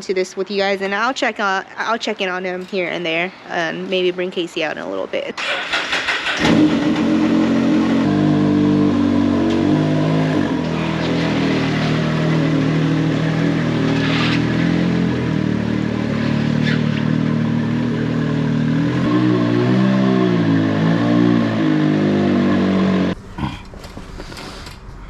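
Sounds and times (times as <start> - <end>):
utility vehicle engine revving: 5.4 - 25.0.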